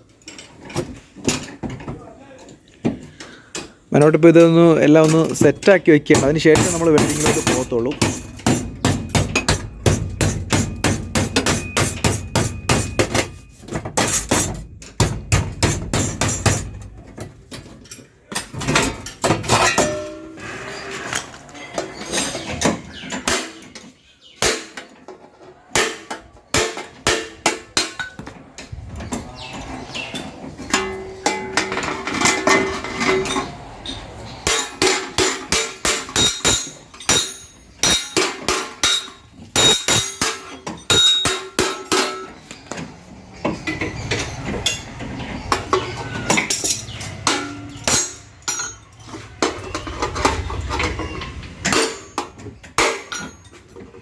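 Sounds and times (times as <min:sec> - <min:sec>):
hammer on sheet metal: 0:06.1 - 0:17.0, 0:25.7 - 0:28.3, 0:34.4 - 0:42.3, 0:45.7 - 0:48.8.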